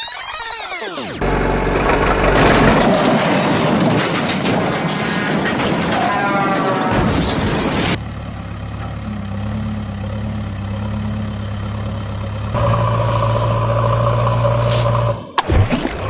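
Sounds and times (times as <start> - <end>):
truck engine idling: 1.2 - 4.7, 7.7 - 15.3
high whining tone: 12.6 - 15.3.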